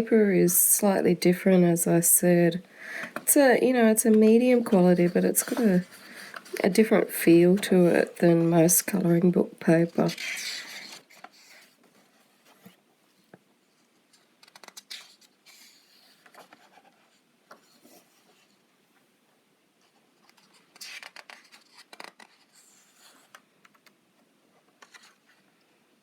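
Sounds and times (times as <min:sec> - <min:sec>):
book pages rustling: 0:02.9 - 0:09.0, 0:09.8 - 0:18.6, 0:19.8 - 0:25.6.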